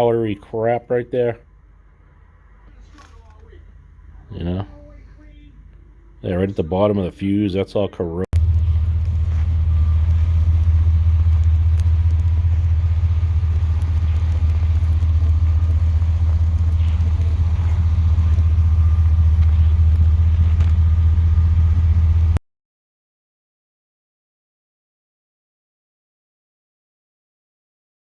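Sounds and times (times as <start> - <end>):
truck engine rumble: 8.4 - 22.4.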